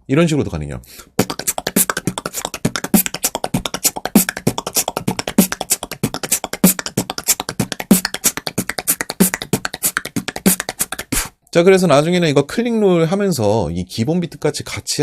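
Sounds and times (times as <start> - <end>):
beatbox tongue click roll: 1.2 - 11.3.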